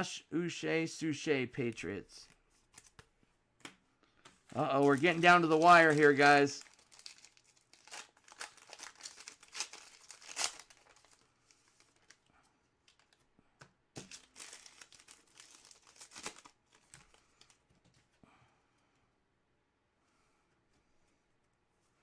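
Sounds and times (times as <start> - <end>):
foil wrapper crinkling and tearing: 4.6 - 12.3, 14.0 - 17.6.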